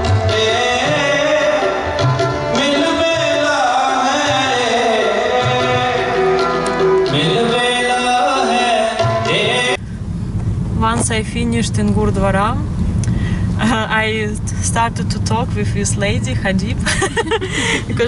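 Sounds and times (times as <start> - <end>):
melody instruments: 0.0 - 9.8
person singing: 0.0 - 9.8
tabla drums: 0.0 - 9.8.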